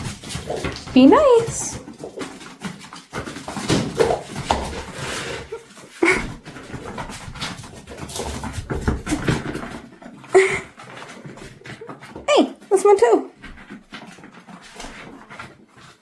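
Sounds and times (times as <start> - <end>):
dog panting: 10.3 - 13.1.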